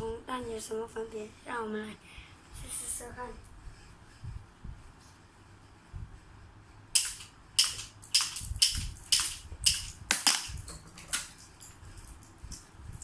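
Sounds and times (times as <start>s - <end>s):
toy pistol cracks: 7.0s - 11.3s.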